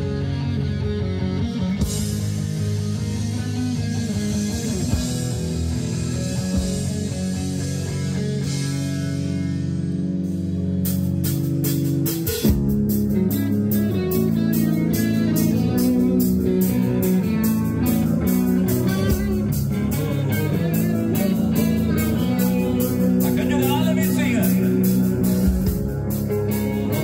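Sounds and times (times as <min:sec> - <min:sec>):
bass guitar: 0:00.0 - 0:27.0
guitar chords: 0:00.0 - 0:27.0
rock band playing: 0:00.0 - 0:27.0
drum kit cymbal beat: 0:01.8 - 0:27.0.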